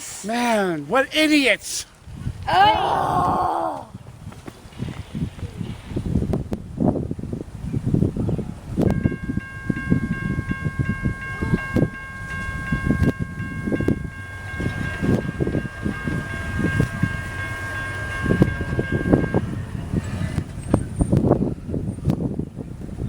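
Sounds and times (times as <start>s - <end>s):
pulsing bell-like tone: 8.9s - 20.2s.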